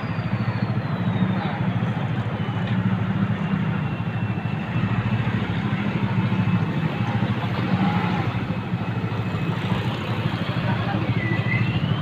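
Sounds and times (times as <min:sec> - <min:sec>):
road noise on rough road: 0:00.0 - 0:12.0
vehicle engine running: 0:00.0 - 0:12.0.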